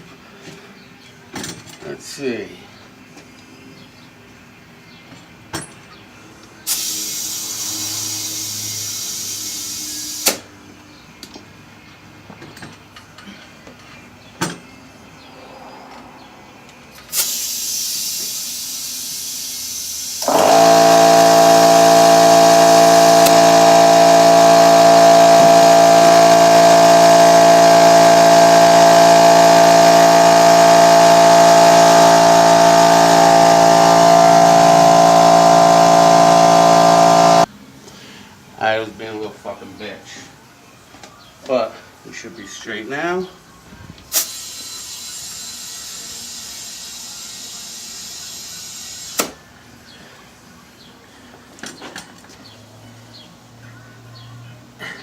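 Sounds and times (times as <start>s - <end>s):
air compressor running: 6.6s - 10.5s, 16.9s - 37.5s, 44.1s - 49.4s
air hissing into a tire: 6.6s - 10.5s, 17.0s - 37.5s, 44.1s - 49.4s.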